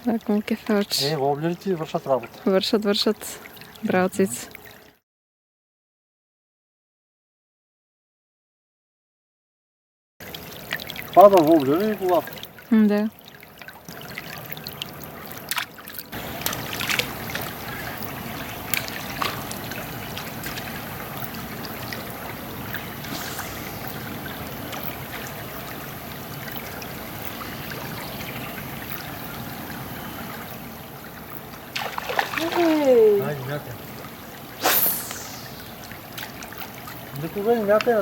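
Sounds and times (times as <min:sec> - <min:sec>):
river water rushing: 0:13.3 - 0:30.8, 0:31.4 - 0:37.4.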